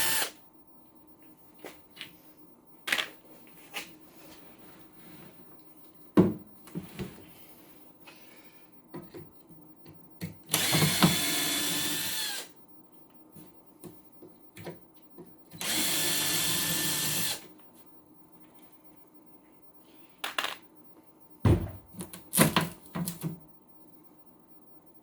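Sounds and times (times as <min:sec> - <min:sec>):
electric drill running: 0:00.0 - 0:00.3, 0:10.5 - 0:12.5, 0:15.6 - 0:17.4.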